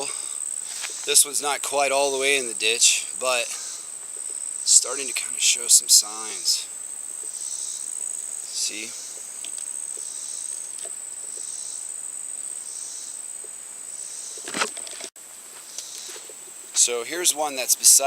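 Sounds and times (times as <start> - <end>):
insect buzzing chorus: 0.0 - 18.0
insects trilling: 0.0 - 18.0
brief thump: 14.4 - 14.9.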